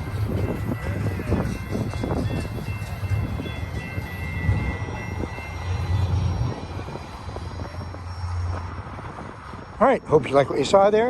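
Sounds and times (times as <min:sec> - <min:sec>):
train wheels rumbling on rail: 0:00.0 - 0:10.3
freight cars clacking: 0:00.0 - 0:11.0.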